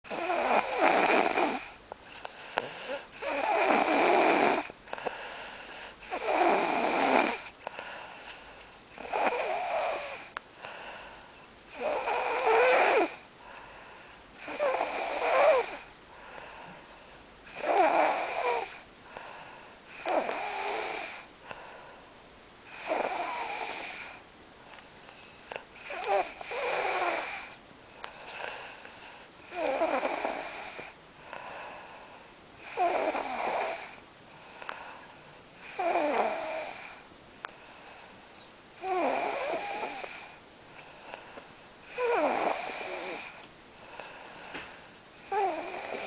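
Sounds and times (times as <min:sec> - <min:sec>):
person snoring: 0:00.1 - 0:07.5, 0:08.9 - 0:10.8, 0:11.7 - 0:13.2, 0:14.4 - 0:15.9, 0:17.5 - 0:18.8, 0:19.9 - 0:21.3, 0:22.7 - 0:24.2, 0:25.8 - 0:31.8, 0:32.6 - 0:34.0, 0:35.6 - 0:37.0, 0:38.8 - 0:40.4, 0:41.9 - 0:46.0.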